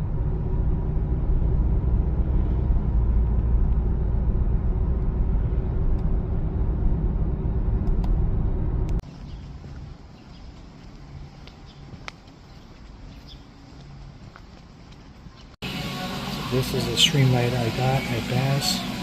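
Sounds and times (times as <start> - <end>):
car rumbling on the move: 0.0 - 12.4.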